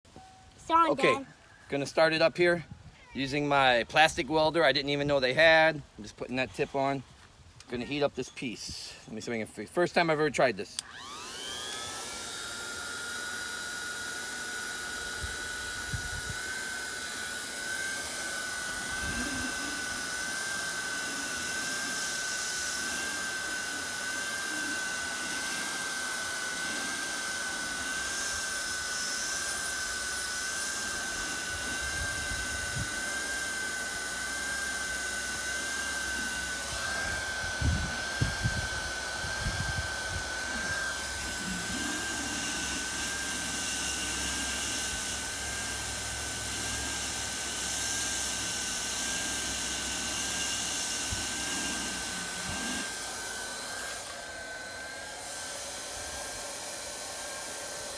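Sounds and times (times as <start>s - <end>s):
hot-air welder blower whine: 10.8s - 57.9s
rush of hot air: 15.8s - 57.9s.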